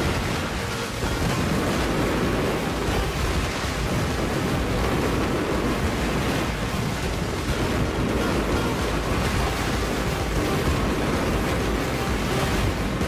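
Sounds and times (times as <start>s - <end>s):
fireworks bursts and crackles: 0.0s - 13.0s.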